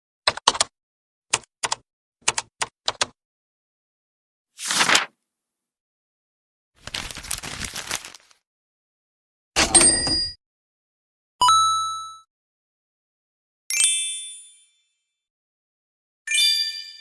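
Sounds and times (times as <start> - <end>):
crinkly crackling rustle: 6.8 - 8.4.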